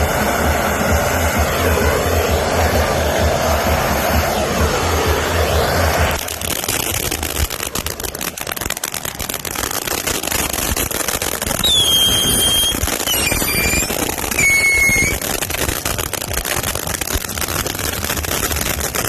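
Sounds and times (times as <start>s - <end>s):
firework crackling: 0.0s - 19.0s
firework rushing hiss: 0.0s - 19.0s
shrill firework whistles: 8.9s - 16.5s.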